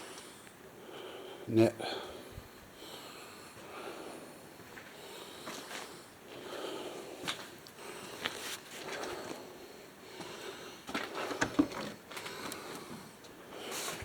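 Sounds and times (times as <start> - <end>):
person breathing and sniffing: 12.2 - 14.0.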